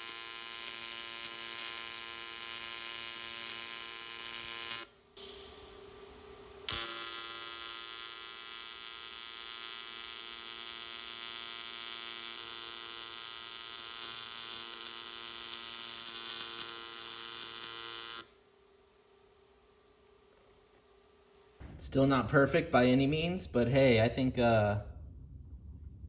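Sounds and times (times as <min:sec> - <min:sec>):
welding arc buzzing: 0:00.0 - 0:05.8, 0:06.6 - 0:18.4.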